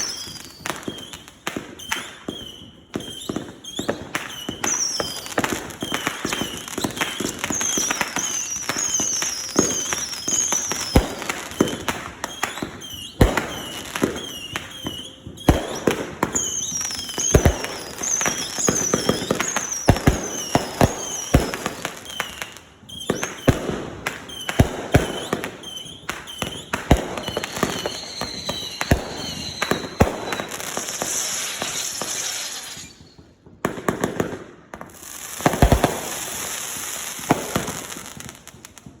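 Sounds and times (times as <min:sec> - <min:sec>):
falling firework whistles: 0:00.0 - 0:39.0
crackling hiss: 0:25.1 - 0:33.2.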